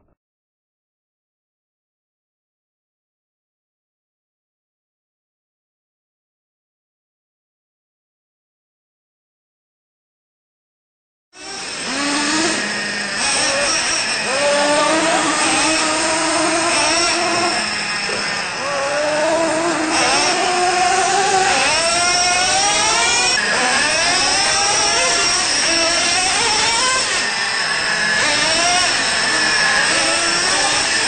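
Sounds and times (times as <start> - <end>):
rc truck engine revving: 11.4 - 31.0.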